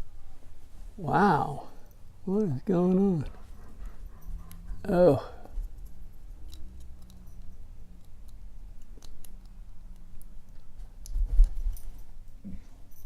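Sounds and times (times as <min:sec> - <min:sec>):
lock pick clicking and scraping: 0:06.4 - 0:10.7.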